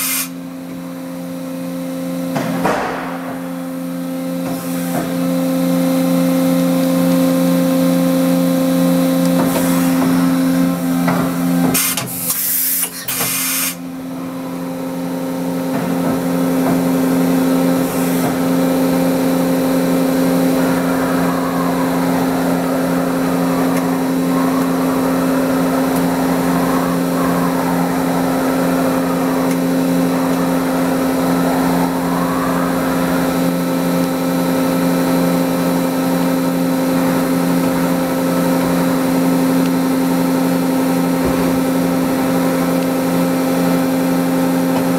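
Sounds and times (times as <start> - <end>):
hiss: 0.0 - 0.3
machine hum: 0.0 - 44.9
machine whine rising and falling: 0.0 - 44.9.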